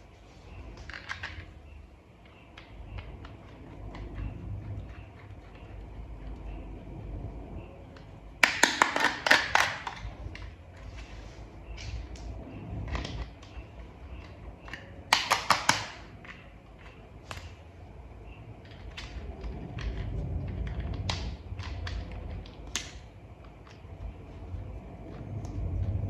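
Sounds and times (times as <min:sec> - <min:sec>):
plastic toy parts clicking: 0:00.8 - 0:01.5, 0:14.2 - 0:17.6.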